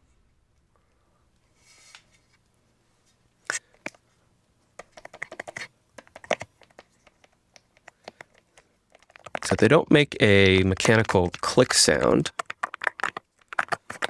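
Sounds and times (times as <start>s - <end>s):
keyboard keys tapping: 9.0s - 14.0s.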